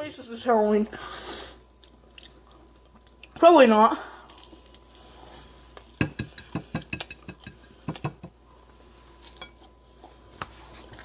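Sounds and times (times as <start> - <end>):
chewing food: 1.8 - 3.4.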